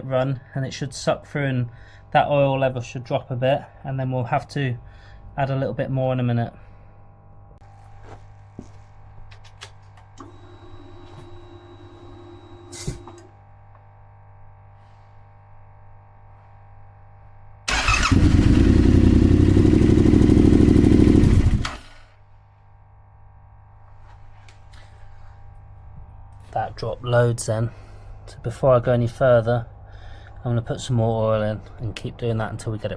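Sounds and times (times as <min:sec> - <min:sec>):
motorcycle engine running: 0:17.7 - 0:22.0.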